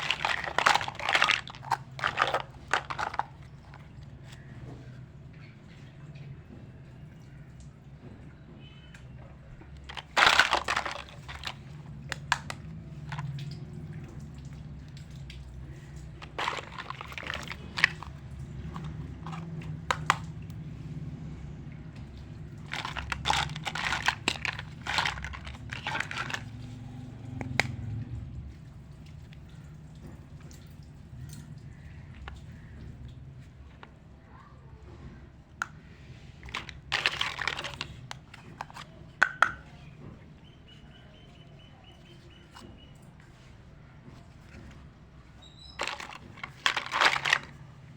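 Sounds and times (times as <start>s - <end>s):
plastic toy pieces clicking: 0.0s - 4.1s, 9.8s - 13.4s, 16.2s - 20.3s, 22.5s - 26.6s, 36.4s - 39.6s, 45.8s - 47.6s
packaging crinkling: 0.0s - 4.5s, 9.8s - 13.5s, 15.7s - 20.3s, 22.5s - 26.8s, 36.4s - 38.9s, 45.6s - 47.7s.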